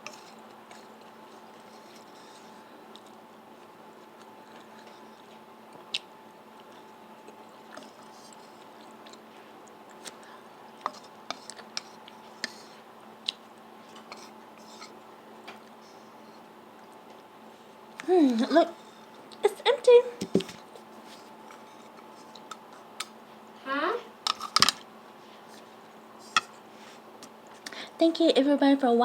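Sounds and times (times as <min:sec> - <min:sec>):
quiet chewing: 0:00.0 - 0:18.1, 0:20.6 - 0:23.5
faint hum: 0:00.0 - 0:29.0.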